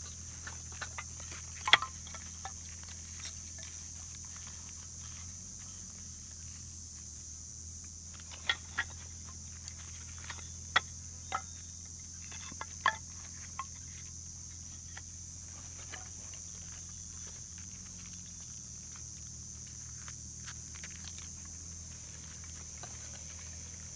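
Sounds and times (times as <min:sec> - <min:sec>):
high-pitched insect drone: 0:08.2 - 0:15.2.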